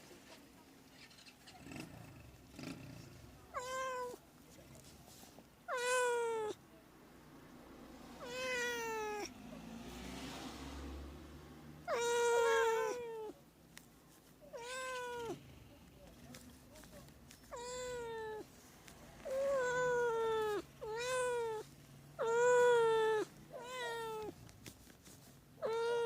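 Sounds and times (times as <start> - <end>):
cat meowing: 3.5 - 4.2, 5.7 - 6.6, 8.2 - 9.3, 11.8 - 13.4, 14.5 - 15.4, 17.4 - 18.5, 19.2 - 24.4, 25.6 - 26.0.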